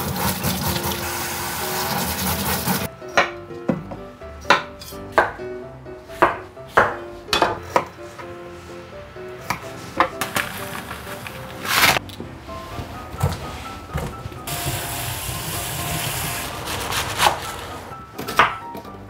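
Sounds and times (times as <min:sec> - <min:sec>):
running water: 0:00.0 - 0:02.9, 0:14.5 - 0:17.9
light background music: 0:00.0 - 0:19.0.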